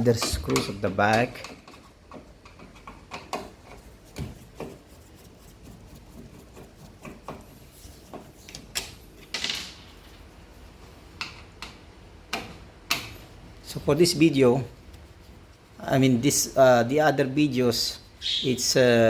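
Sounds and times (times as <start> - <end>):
scraping rasp: 1.4 - 8.6.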